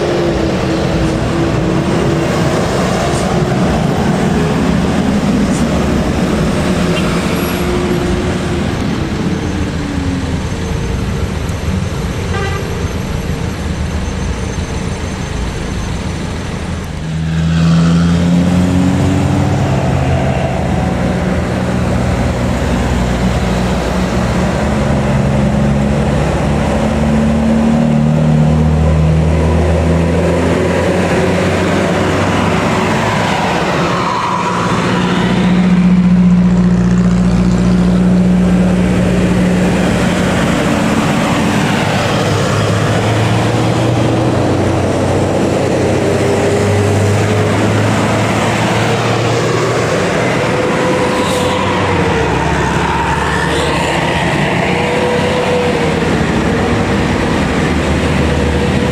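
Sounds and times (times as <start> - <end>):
bus engine running: 0.0 - 58.9
road noise: 0.0 - 58.9
multi-tone bus horn tune: 12.3 - 12.9.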